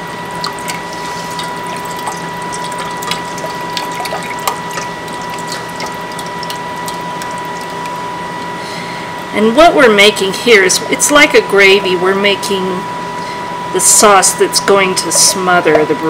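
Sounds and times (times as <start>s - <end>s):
steady background hum: 0.0s - 16.0s.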